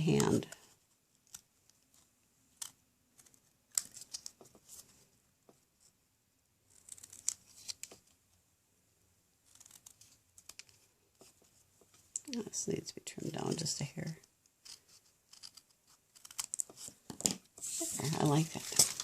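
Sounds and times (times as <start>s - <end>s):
scissors snipping paper: 9.4s - 10.7s, 14.6s - 16.9s.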